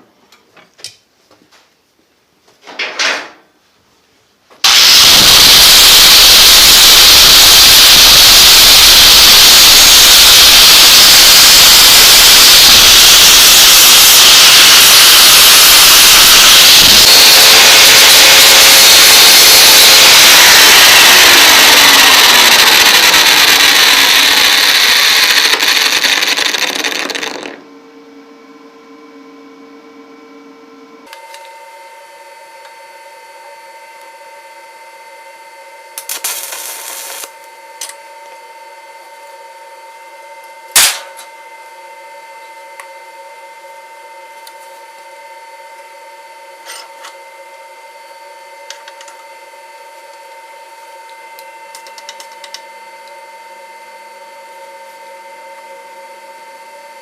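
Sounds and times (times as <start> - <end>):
power grinder grinding metal: 4.6 - 27.6, 36.1 - 37.3.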